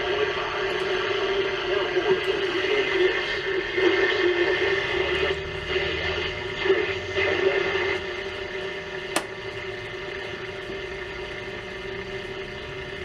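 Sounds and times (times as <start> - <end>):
constant low whine: 0.0 - 13.0
radio static hiss: 0.0 - 13.0
weak jammed radio station: 0.0 - 13.0
sharp click: 9.1 - 9.4.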